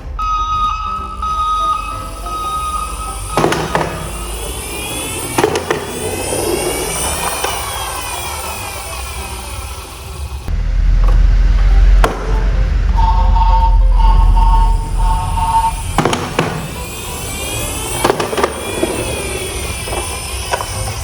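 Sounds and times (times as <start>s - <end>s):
vehicle engine revving: 1.0s - 21.0s
sharp knocks: 3.3s - 4.4s, 12.0s - 12.6s.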